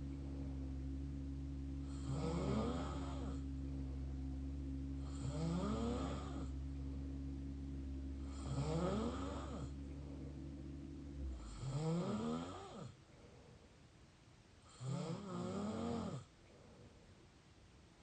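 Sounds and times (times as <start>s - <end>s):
low steady hum: 0.0s - 18.0s
person snoring: 1.8s - 4.0s, 5.0s - 6.6s, 8.2s - 10.3s, 11.2s - 13.0s, 14.6s - 16.3s.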